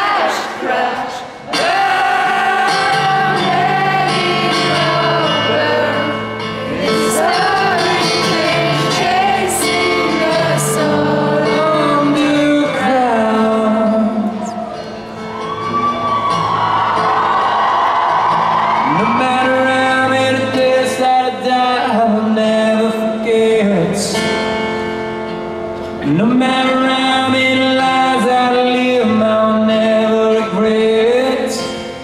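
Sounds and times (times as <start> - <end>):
person singing wordless melody: 0.0 - 15.0
acoustic guitar: 0.0 - 32.0.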